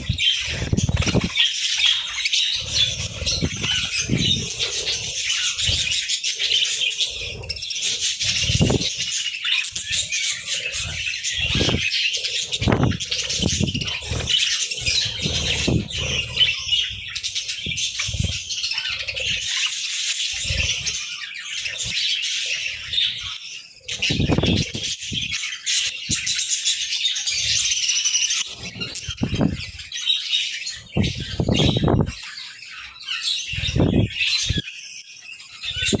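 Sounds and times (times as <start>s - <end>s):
wing flutters: 0.0s - 22.6s
budgerigars chirping and warbling: 0.0s - 36.0s.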